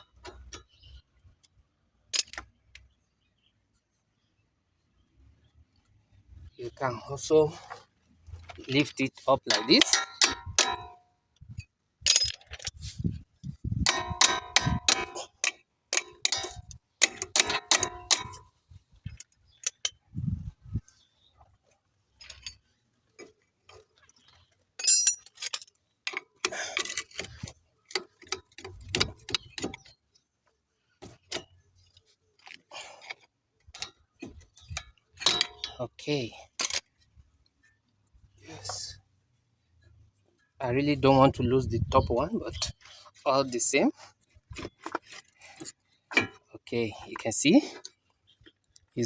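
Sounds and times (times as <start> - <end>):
metal tools clicking and clinking: 2.1 - 2.5, 8.5 - 20.2, 22.2 - 30.0, 31.0 - 37.0, 44.5 - 49.0.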